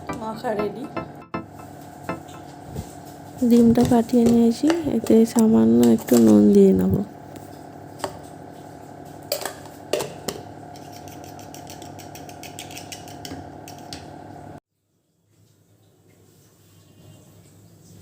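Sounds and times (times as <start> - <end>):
steady hum: 0.0 - 7.7
utensil beating egg in bowl: 3.4 - 7.1, 10.7 - 14.0.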